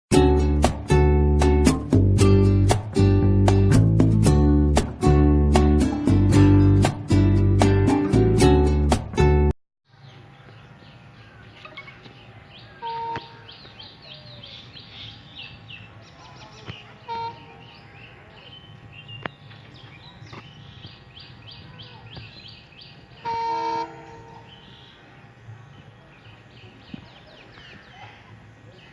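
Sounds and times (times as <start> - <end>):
birds chirping: 9.9 - 28.9
train horn blasts: 12.8 - 13.4, 17.0 - 17.6, 23.2 - 24.6.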